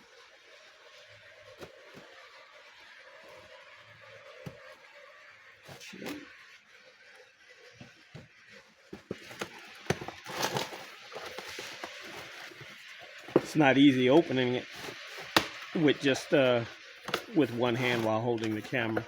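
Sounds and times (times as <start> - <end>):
cardboard and packing rustling: 5.6 - 6.3, 7.7 - 19.0
knife cutting cardboard box: 5.7 - 6.3, 8.9 - 19.0
clicks scrapes and knocks: 8.9 - 15.8, 17.0 - 19.0.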